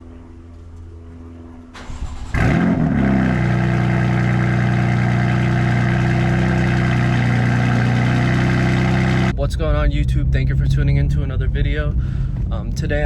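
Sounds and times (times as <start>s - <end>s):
car engine starting and idling: 0.4s - 13.0s
starter motor cranking: 1.8s - 2.8s.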